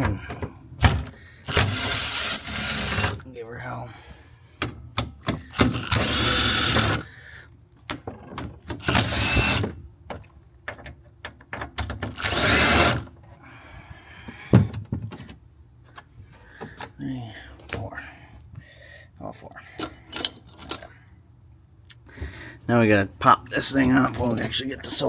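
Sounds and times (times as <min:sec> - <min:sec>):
impact driver running: 0:01.4 - 0:03.2, 0:05.4 - 0:07.1, 0:08.8 - 0:09.7, 0:12.1 - 0:13.0.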